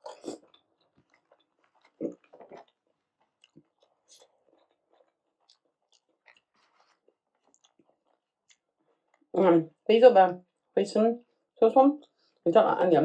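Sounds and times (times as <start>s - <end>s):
wet chewing mouth sounds: 0.0s - 9.3s.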